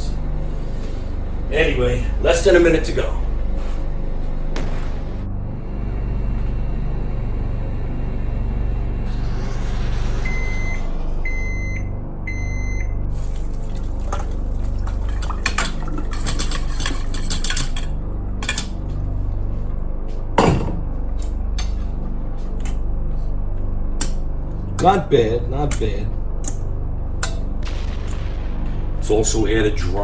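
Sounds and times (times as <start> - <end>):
microwave oven beeping: 10.1 - 13.1
dish clattering: 14.1 - 18.6
loud knock: 20.4 - 20.9.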